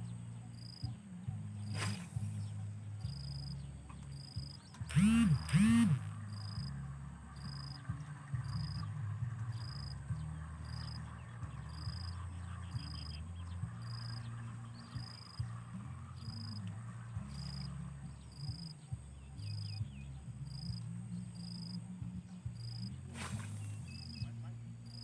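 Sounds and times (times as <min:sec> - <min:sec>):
low animal chorus: 0:06.0 - 0:25.0.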